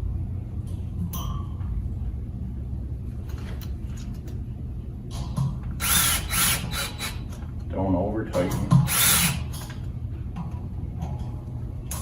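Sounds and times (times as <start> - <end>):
low background rumble: 0.0 - 8.4.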